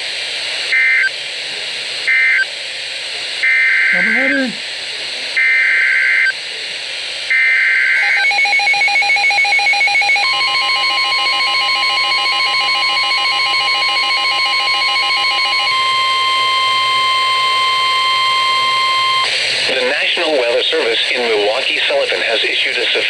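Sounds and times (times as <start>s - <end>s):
steady warning alarm tone: 3.4s - 4.4s, 5.4s - 6.3s, 7.3s - 20.1s
rapid pulsing electronic beeps: 8.0s - 19.3s.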